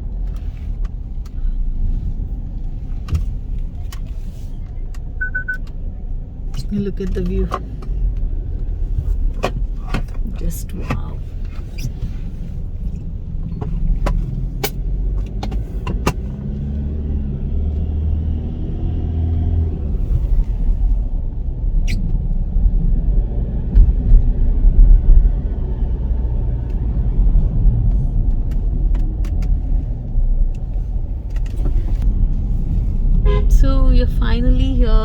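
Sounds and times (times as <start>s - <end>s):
car engine and road rumble: 0.0s - 35.0s.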